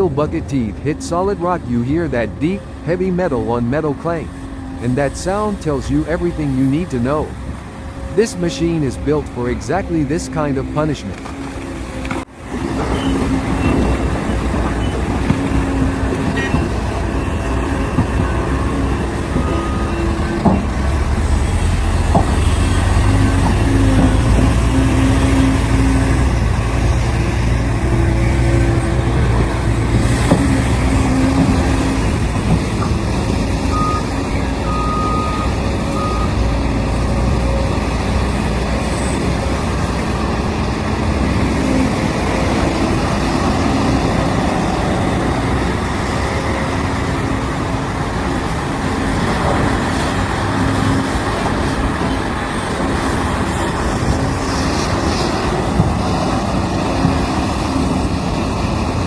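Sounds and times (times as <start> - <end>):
heavy diesel machinery drone: 0.0 - 59.0
beeping: 33.7 - 36.4.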